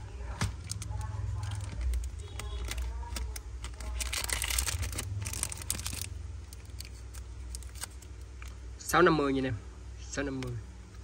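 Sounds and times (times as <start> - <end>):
steady low hum: 0.0 - 11.0
packaging rustling: 0.4 - 8.6.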